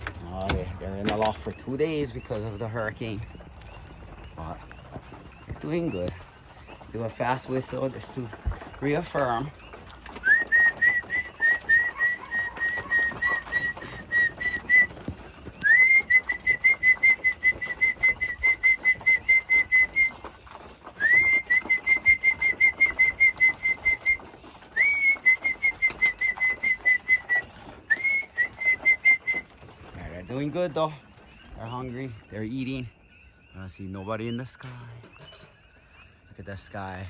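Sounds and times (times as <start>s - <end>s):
rapid high whistling: 4.0s - 33.6s.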